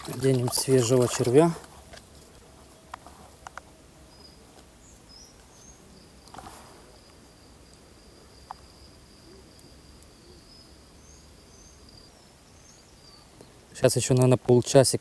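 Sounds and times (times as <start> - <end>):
rustle: 0.0 - 15.0
bird chirps: 10.2 - 13.6.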